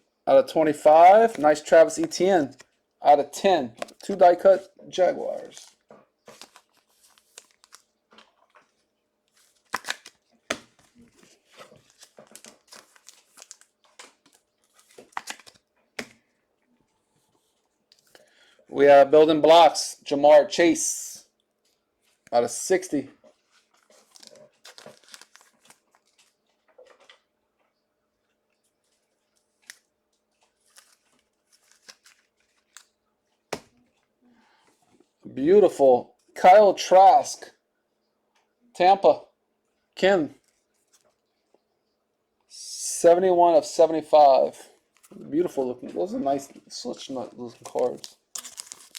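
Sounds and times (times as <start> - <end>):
trading cards flipping: 1.1 - 2.8, 3.7 - 4.4, 5.4 - 16.2, 23.4 - 27.2, 28.9 - 33.9, 45.0 - 48.9
plastic packaging crinkling: 5.4 - 16.2, 23.4 - 27.2, 28.9 - 33.7, 47.0 - 48.9.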